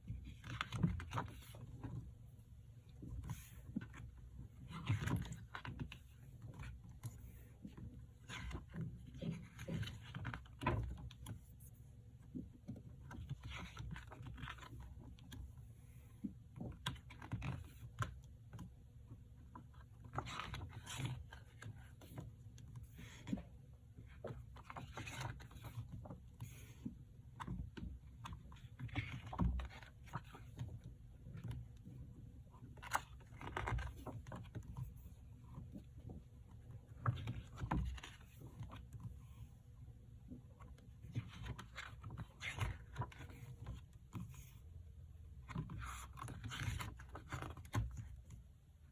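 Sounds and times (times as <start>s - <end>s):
cardboard and paper rustling: 19.6s - 39.5s, 40.6s - 44.6s, 45.4s - 48.3s.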